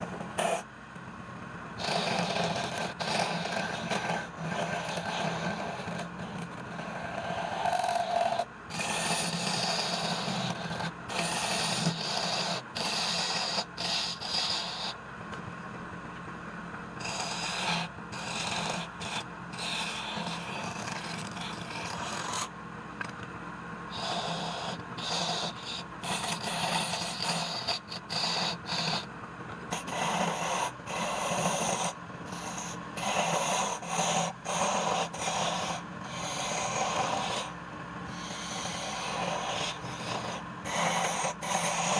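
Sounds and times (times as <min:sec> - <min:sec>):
wood lathe humming: 0:38.1 - 0:41.9.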